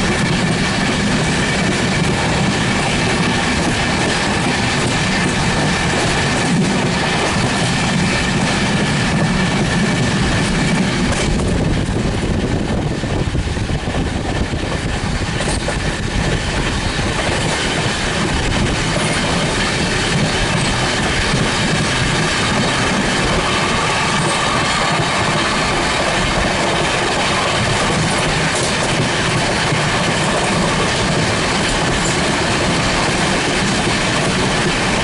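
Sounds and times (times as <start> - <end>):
train wheels rushing on rail: 0.0 - 35.0.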